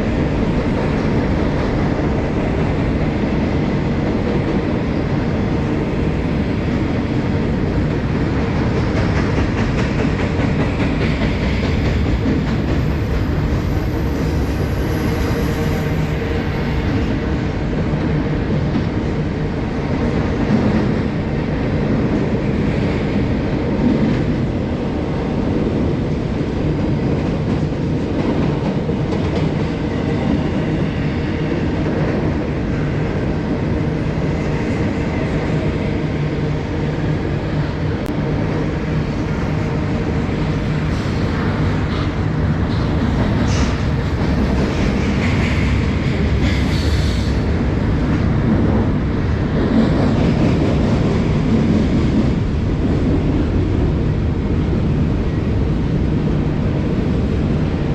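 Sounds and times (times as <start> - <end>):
freight train wheels rumbling: 0.0 - 57.9.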